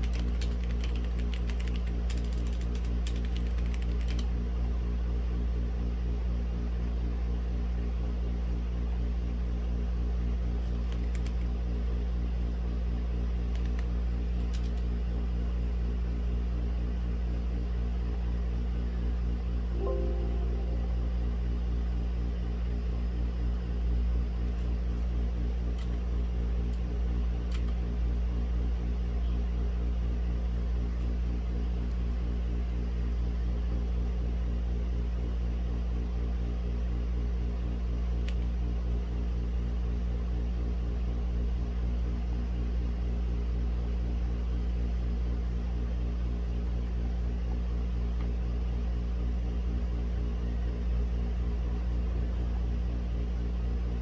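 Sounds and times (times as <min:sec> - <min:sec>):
low mechanical hum: 0:00.0 - 0:54.0
faint clicks: 0:10.7 - 0:11.5, 0:13.5 - 0:13.9.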